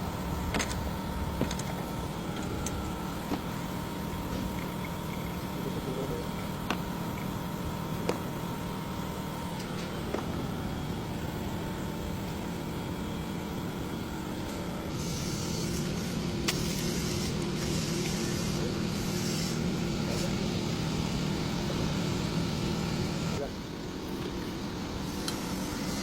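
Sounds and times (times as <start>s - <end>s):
hiss: 14.9s - 23.4s, 24.9s - 26.0s.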